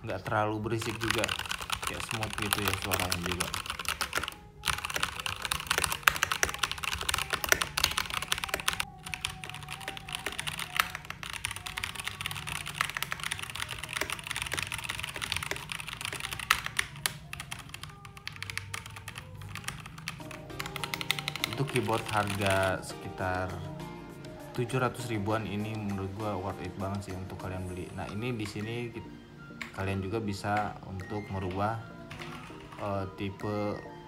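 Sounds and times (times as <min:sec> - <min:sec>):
mechanical keyboard typing: 0:00.7 - 0:22.9.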